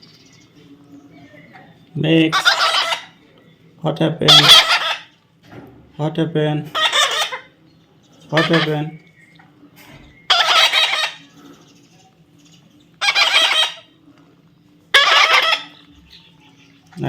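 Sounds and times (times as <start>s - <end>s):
baby parrot screeching: 2.3s - 3.2s, 4.2s - 5.2s, 6.7s - 7.5s, 8.4s - 8.9s, 10.2s - 11.2s, 13.0s - 13.9s, 14.9s - 15.9s.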